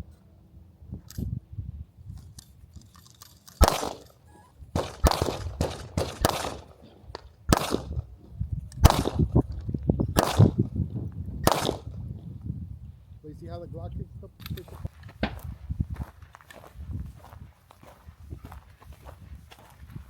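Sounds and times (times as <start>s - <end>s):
pistol shots: 3.6s - 8.1s, 8.8s - 9.4s, 10.2s - 10.6s, 11.4s - 11.9s.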